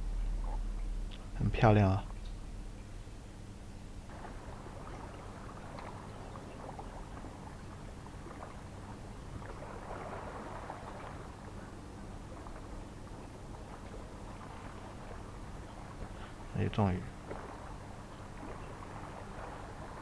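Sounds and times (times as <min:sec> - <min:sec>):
water fizzing through rocks: 0:04.1 - 0:16.3
small waves lapping over stones: 0:04.1 - 0:16.4, 0:17.1 - 0:20.0.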